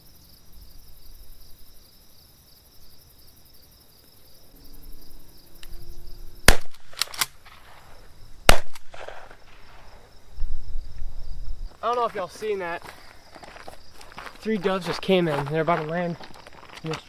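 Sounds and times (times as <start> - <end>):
insects droning: 0.0 - 17.0
shotgun shots: 6.4 - 9.9
faint cracks: 6.5 - 10.0.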